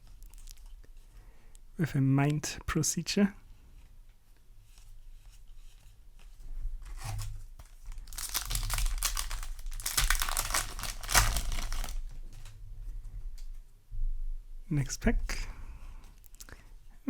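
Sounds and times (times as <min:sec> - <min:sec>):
foil wrapper tearing and crinkling: 0:06.9 - 0:12.5.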